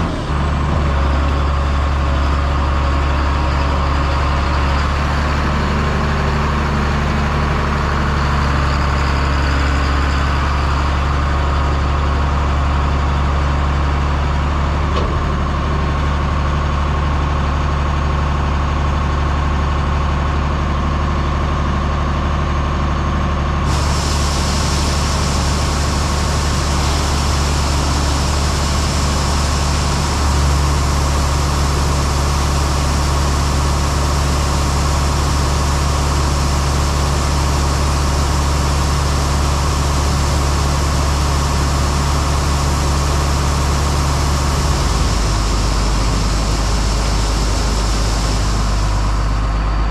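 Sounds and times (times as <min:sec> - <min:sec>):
heavy diesel engine running: 0:00.0 - 0:49.9
bright hiss: 0:23.7 - 0:49.4.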